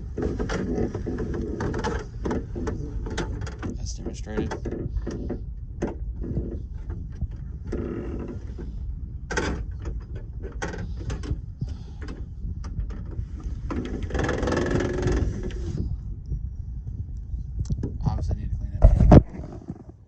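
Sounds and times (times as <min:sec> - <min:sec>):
rasping scrape: 0:00.0 - 0:05.4, 0:13.1 - 0:15.9, 0:18.8 - 0:20.0.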